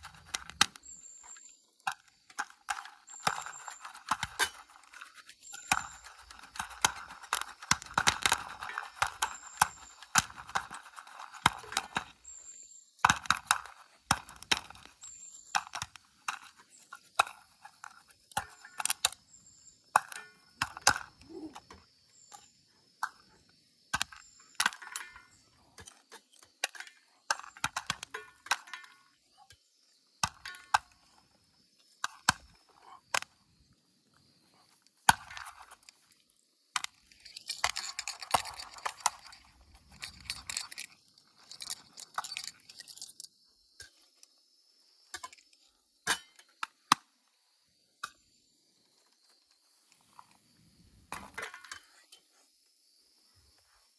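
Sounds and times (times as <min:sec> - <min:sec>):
popcorn popping in metal pan: 0:01.9 - 0:12.2
metallic clinks: 0:36.9 - 0:43.4.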